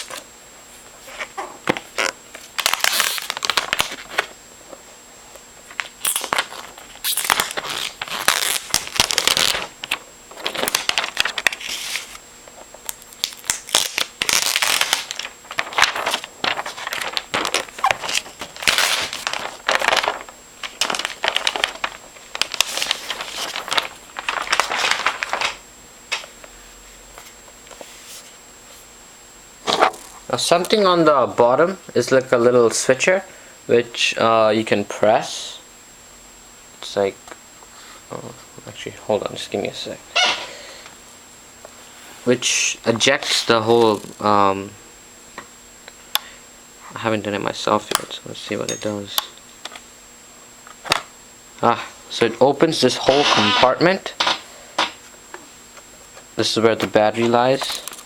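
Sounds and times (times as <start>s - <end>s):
plastic wrap crinkling: 1.3s - 4.3s, 5.7s - 12.2s, 12.8s - 25.6s.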